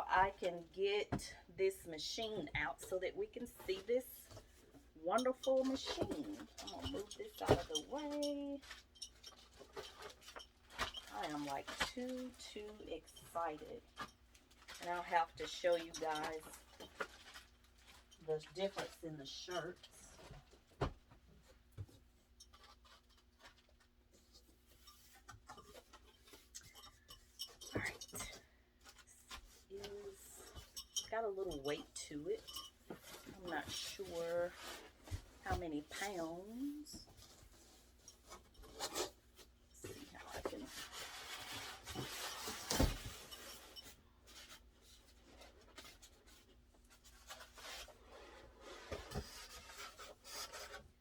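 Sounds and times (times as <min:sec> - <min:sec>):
cardboard packaging scraping and rustling: 0:40.1 - 0:51.0.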